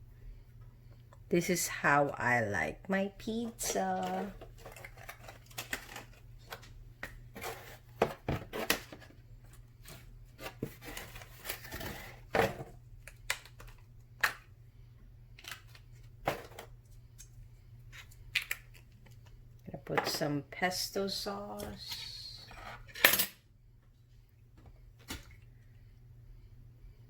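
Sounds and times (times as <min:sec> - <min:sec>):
hands handling food and packaging: 0:03.3 - 0:14.6, 0:15.3 - 0:19.6.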